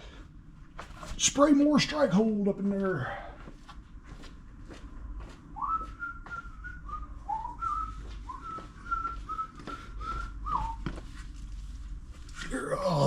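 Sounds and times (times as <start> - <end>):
man whistling a tune: 5.6 - 10.9.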